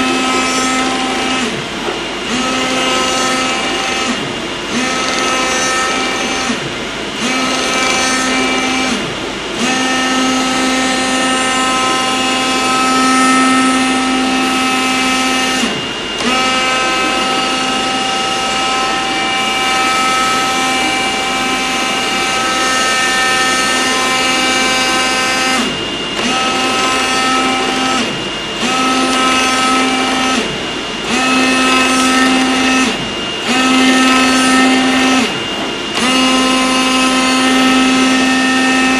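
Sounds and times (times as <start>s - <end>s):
oscillating knife buzzing: 9.7s - 38.9s.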